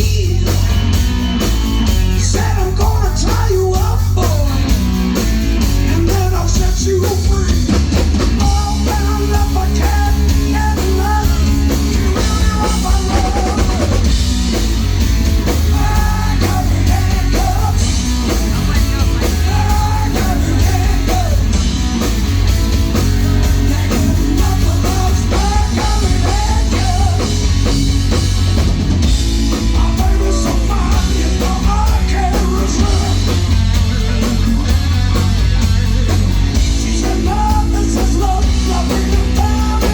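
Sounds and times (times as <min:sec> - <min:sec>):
bass guitar: 0:00.0 - 0:39.9
drum kit: 0:00.0 - 0:39.9
electric guitar: 0:00.0 - 0:39.9
person singing: 0:08.4 - 0:14.1, 0:15.5 - 0:21.7, 0:22.9 - 0:27.7, 0:29.6 - 0:36.0, 0:36.7 - 0:39.9.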